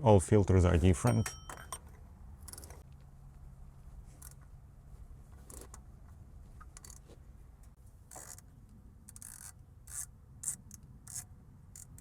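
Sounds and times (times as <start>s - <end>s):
metallic clicks and scrapes of wrench: 1.2s - 2.9s, 4.1s - 4.5s, 5.4s - 5.8s, 6.6s - 12.0s.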